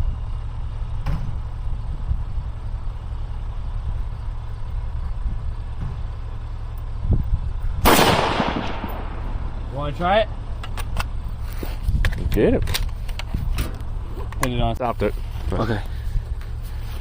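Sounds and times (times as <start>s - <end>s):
steady low rumble: 0.0s - 17.0s
rifle shot: 7.8s - 9.6s.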